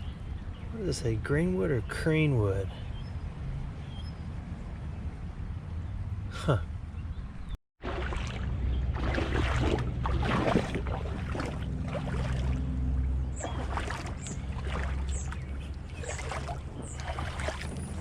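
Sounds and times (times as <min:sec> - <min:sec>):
creek water splashing: 0:07.8 - 0:18.0
steady low rumble: 0:07.8 - 0:18.0.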